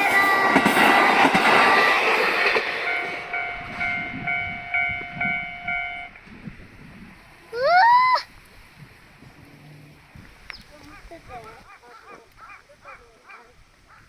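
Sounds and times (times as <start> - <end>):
crossing warning bell ringing: 0.0 - 6.2
train wheel and rail noise: 0.0 - 13.2.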